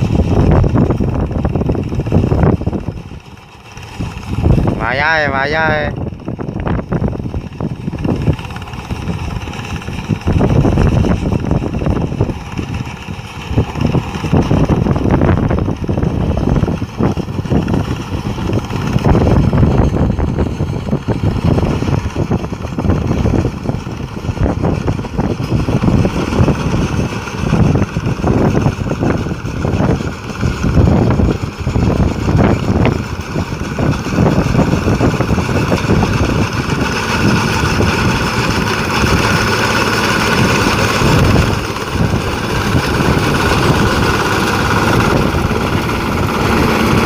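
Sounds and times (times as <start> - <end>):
harvester engine running: 0.0 - 47.0
wind buffeting microphone: 0.0 - 47.0.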